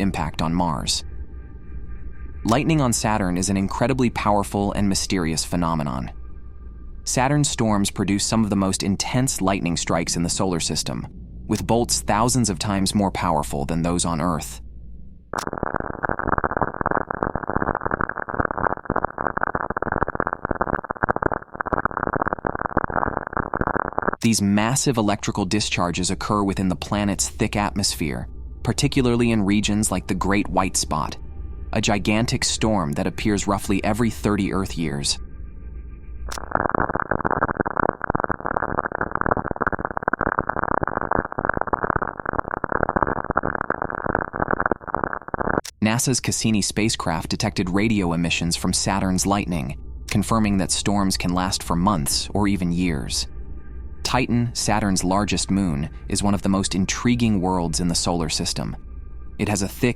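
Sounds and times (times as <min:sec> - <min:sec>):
dense crackling static: 0:00.0 - 0:01.0, 0:02.4 - 0:06.3, 0:07.0 - 0:59.9.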